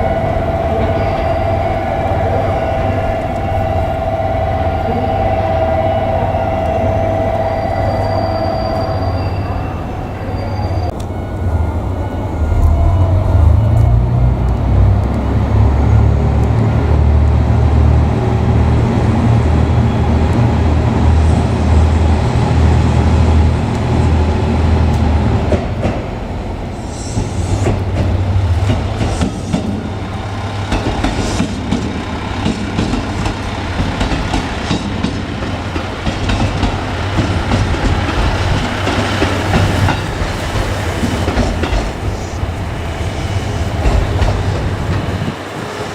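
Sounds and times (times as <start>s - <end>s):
diesel engine rumbling: 0.0s - 45.8s
train wheels clattering over rail joints: 27.1s - 45.9s.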